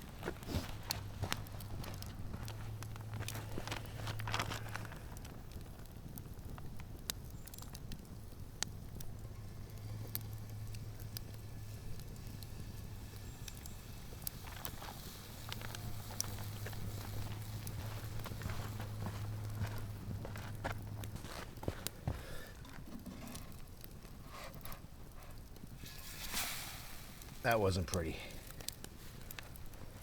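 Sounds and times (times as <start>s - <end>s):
campfire crackling: 0.0s - 30.0s.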